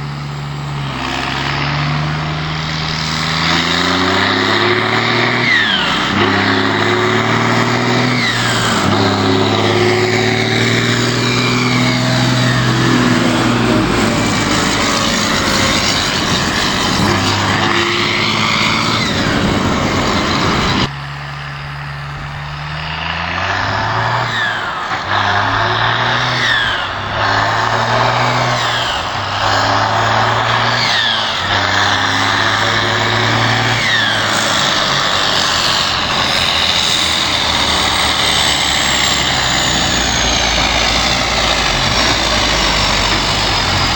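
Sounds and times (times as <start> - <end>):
tractor diesel engine revving: 0.0 - 43.9.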